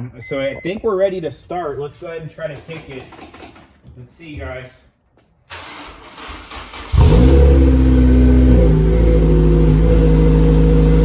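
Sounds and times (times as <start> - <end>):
car engine cranking and idling: 5.5 - 11.0.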